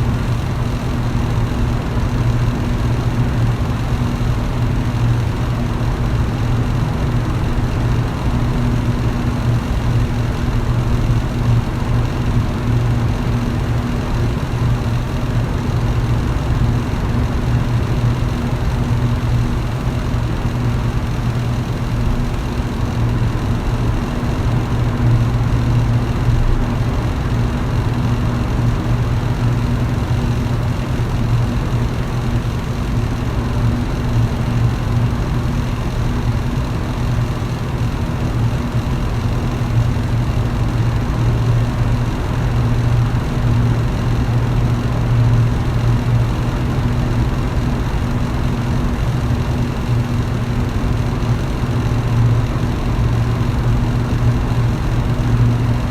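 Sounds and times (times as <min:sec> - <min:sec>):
electric fan running: 0:00.0 - 0:55.9.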